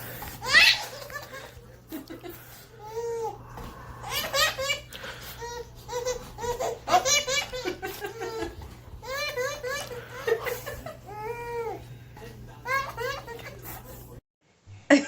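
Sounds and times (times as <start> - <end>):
baby giggling: 0.4 - 2.2, 4.0 - 11.8, 12.6 - 13.8.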